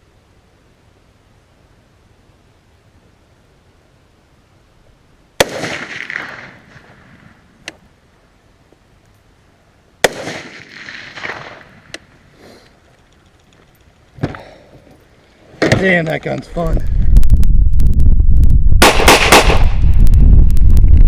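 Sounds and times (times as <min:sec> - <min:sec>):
gunshots with rolling echo: 0:05.4 - 0:07.6, 0:10.0 - 0:12.0, 0:18.8 - 0:20.0.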